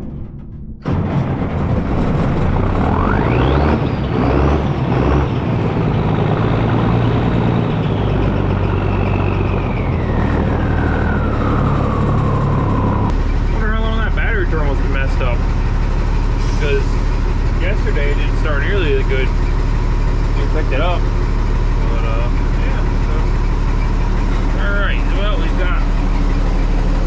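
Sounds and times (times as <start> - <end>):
diesel truck engine running: 0.0 - 27.0
high whine: 8.2 - 19.4.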